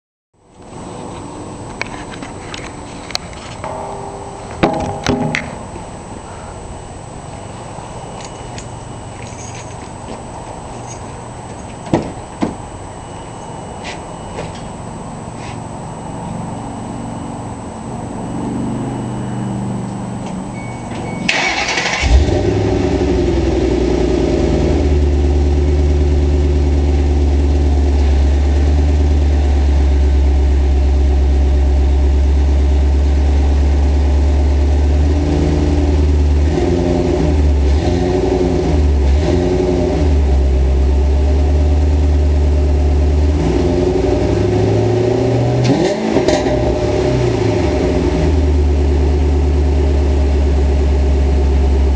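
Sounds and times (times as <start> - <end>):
raspy engine idling with throttle blips: 0.5 - 51.9
engine cranking and starting: 21.3 - 22.7.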